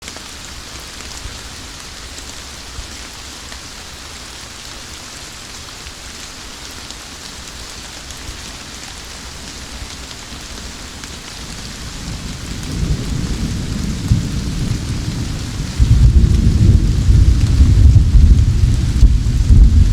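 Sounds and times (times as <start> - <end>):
rain falling: 0.0 - 19.9
thunder rumbling: 11.3 - 19.9.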